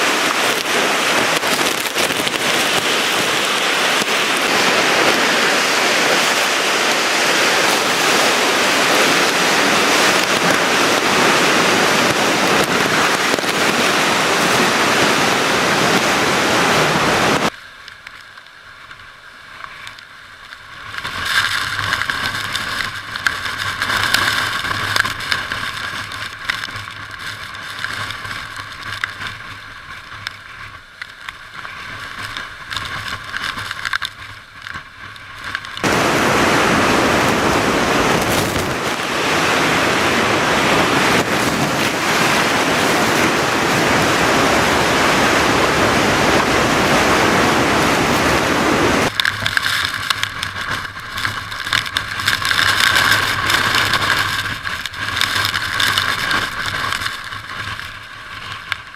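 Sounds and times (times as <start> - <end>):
thin wind noise: 0.0 - 17.5, 31.6 - 58.3
hurricane wind and rain: 0.0 - 58.9.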